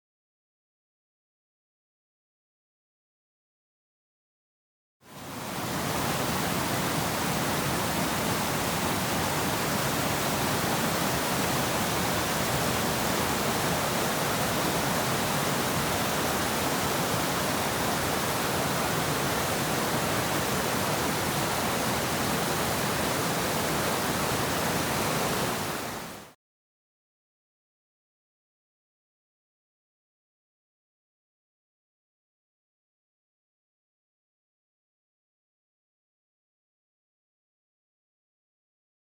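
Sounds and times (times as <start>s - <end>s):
waterfall rushing: 5.2s - 26.3s.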